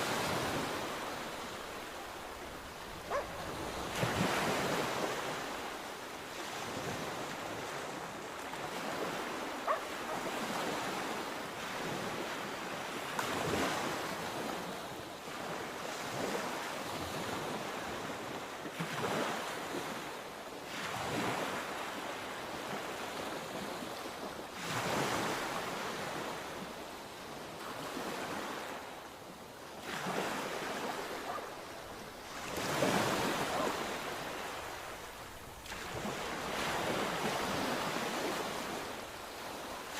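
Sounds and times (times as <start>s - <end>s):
hiss of surf: 0.0s - 6.3s
sea waves breaking on shore: 0.0s - 39.9s.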